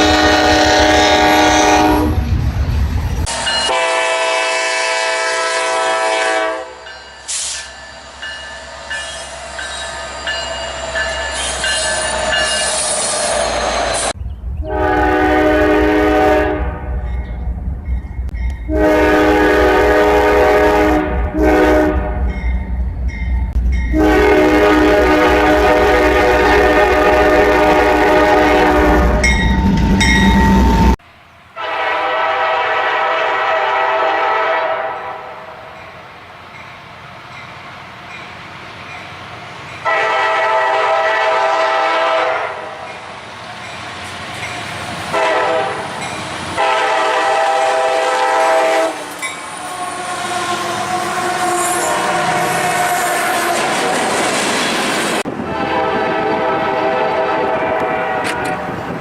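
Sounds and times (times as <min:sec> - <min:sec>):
locomotive air horn blasts: 0:00.0 - 0:02.2, 0:03.7 - 0:06.8, 0:14.6 - 0:17.0, 0:18.7 - 0:22.4, 0:23.9 - 0:29.3, 0:31.6 - 0:35.5, 0:39.8 - 0:42.8, 0:45.1 - 0:45.9, 0:46.6 - 0:53.9, 0:55.5 - 0:58.8
locomotive rumbling: 0:00.0 - 0:59.0.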